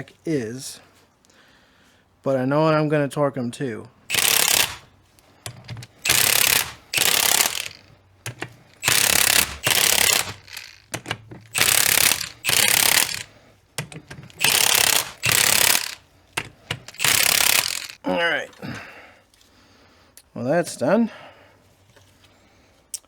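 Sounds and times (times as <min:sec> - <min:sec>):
ratchet wrench clicking: 0:04.1 - 0:04.9, 0:05.5 - 0:18.0.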